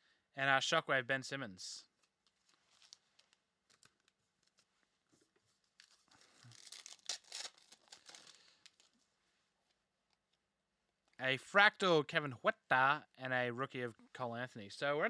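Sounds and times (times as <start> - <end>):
wrapper crinkling and tearing: 2.0 - 4.7, 5.5 - 9.1.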